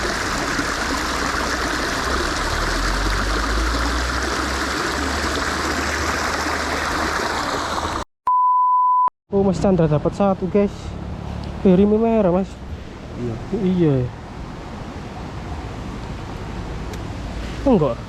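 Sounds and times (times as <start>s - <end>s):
flowing stream water: 0.0s - 8.0s.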